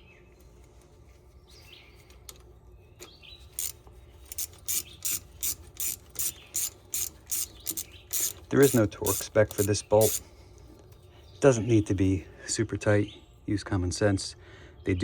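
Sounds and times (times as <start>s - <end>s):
ratchet clicking: 3.0s - 10.3s.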